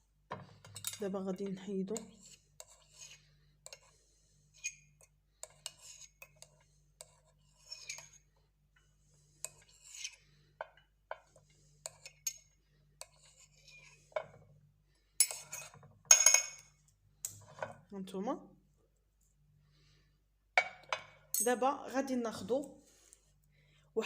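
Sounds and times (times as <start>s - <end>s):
metal spoon scraping glass: 1.9s - 3.9s, 4.6s - 8.2s, 9.4s - 10.2s, 11.8s - 14.3s, 15.2s - 16.6s.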